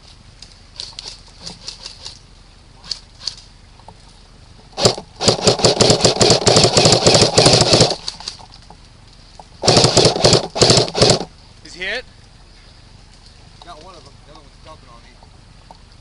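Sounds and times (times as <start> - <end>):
airsoft rifle firing: 4.8 - 8.4, 9.6 - 11.3.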